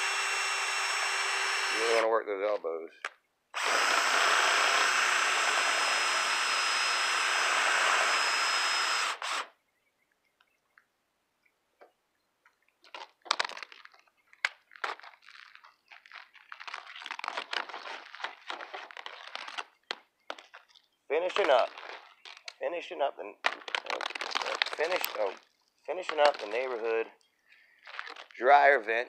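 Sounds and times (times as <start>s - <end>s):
power drill spinning brush: 0.0s - 2.0s, 3.6s - 9.5s
scraping and rustling: 12.8s - 22.6s.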